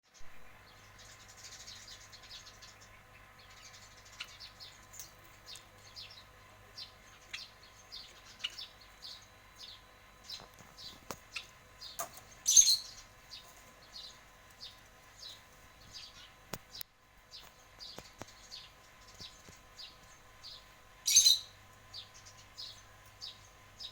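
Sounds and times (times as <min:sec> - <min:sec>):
lovebird chirping: 0:00.1 - 0:23.9
loud harsh bird call: 0:21.1 - 0:21.6.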